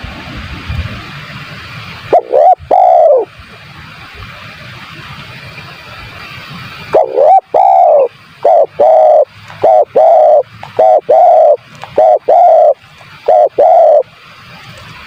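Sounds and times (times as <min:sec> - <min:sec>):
dove cooing: 0:02.1 - 0:03.3, 0:06.9 - 0:14.1.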